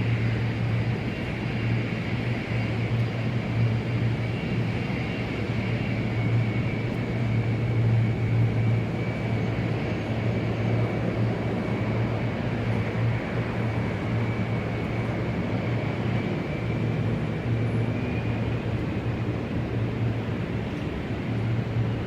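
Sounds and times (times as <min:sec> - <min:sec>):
jet engine hum and whine: 0:00.0 - 0:22.0.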